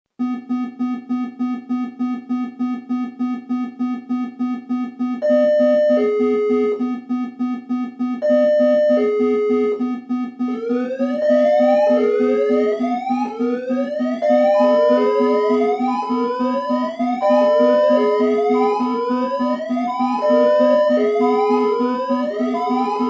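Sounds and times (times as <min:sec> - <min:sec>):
rapid low warning beep: 0:00.2 - 0:23.0
rising whooping alarm tone: 0:10.4 - 0:23.0.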